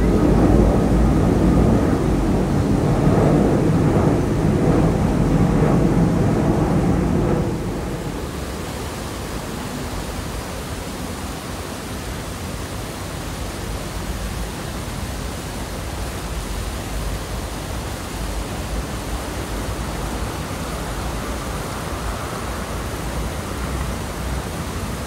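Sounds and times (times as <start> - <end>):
steady rushing noise: 0.0 - 25.0.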